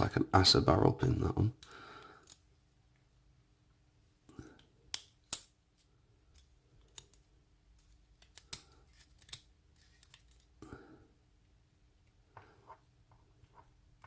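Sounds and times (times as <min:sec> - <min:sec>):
small metallic clicks of lock parts: 0:01.6 - 0:02.5, 0:04.4 - 0:05.6, 0:06.2 - 0:10.6.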